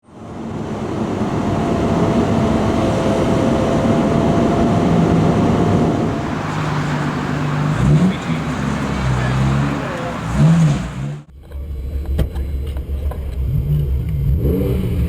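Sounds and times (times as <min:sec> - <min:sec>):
road and wind noise: 0:00.0 - 0:11.3
car engine at low revs: 0:00.2 - 0:11.3.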